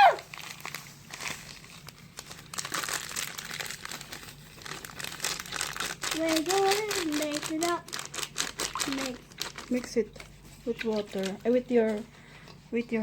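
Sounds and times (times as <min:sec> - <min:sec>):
crinkling and crackling clicks: 0:00.3 - 0:13.0.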